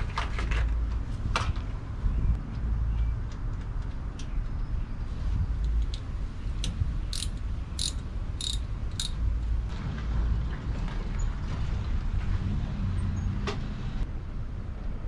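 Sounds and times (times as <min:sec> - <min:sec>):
ratchet wrench clicking: 0:05.8 - 0:09.2.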